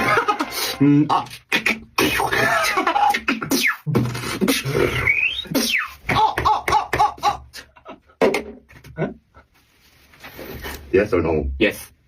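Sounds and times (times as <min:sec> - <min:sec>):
beatboxing mouth sounds: 0:00.4 - 0:09.2.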